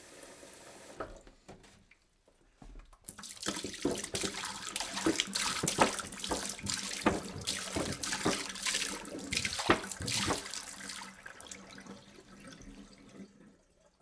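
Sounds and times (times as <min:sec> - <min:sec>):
water pouring from a jug: 0:03.1 - 0:13.9.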